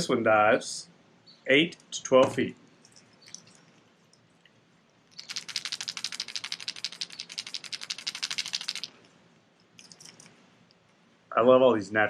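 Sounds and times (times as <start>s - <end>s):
fishing lure rattle clicking: 2.8s - 4.2s, 5.1s - 10.8s.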